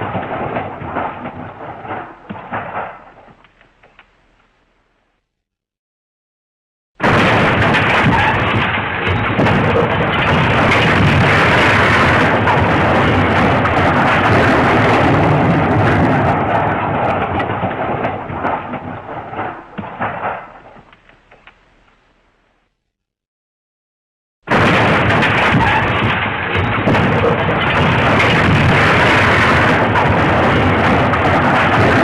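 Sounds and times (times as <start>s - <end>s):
loud crashing rumble: 7.0s - 20.9s, 24.5s - 32.0s.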